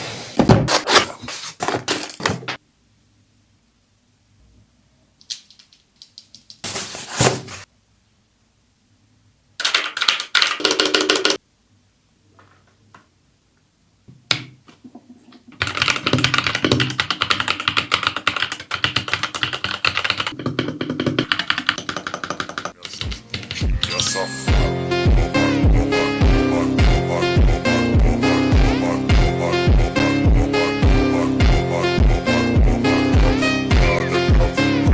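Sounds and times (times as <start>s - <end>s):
mechanical keyboard typing: 9.6s - 11.4s, 15.6s - 23.6s.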